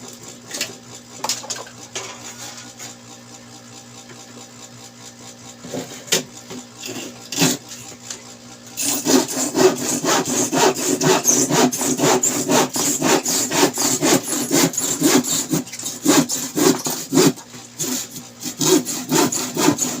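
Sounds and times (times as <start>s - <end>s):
hand tool scraping a surface: 2.1s - 2.9s, 6.8s - 7.9s, 8.8s - 20.0s.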